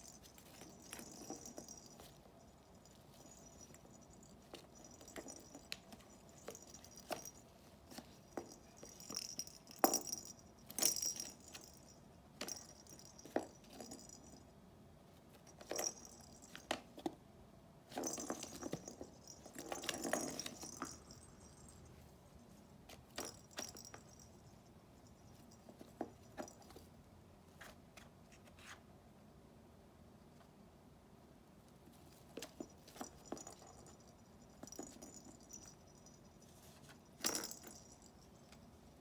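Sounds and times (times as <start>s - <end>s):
kitten batting toy: 0.0s - 14.4s, 17.9s - 22.0s, 23.0s - 24.5s, 32.3s - 38.5s.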